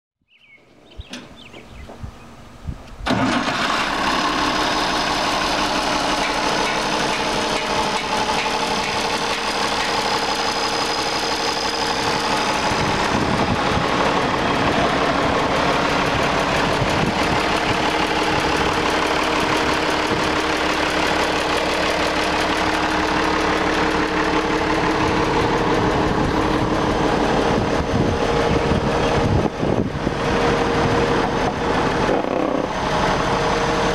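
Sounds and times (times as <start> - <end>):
tractor diesel engine starting: 0.3 - 33.9.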